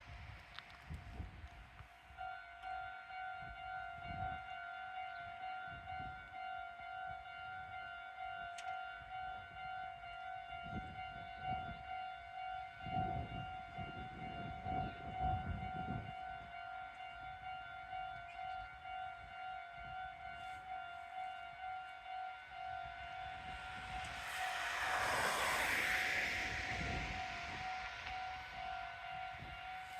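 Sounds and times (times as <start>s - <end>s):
railroad crossing bell: 0.0s - 29.9s
low rumble: 22.7s - 29.9s.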